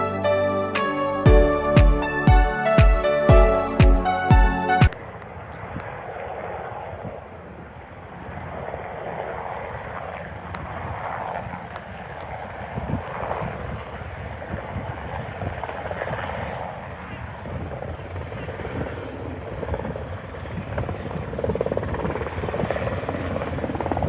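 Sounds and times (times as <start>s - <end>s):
music: 0.0s - 5.0s
helicopter rotor and engines: 0.0s - 24.0s.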